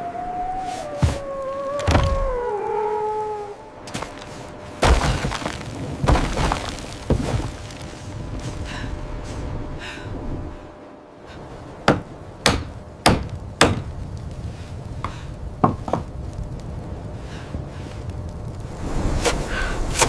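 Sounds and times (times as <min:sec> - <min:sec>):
sharp wooden knocks: 0:11.9 - 0:13.9.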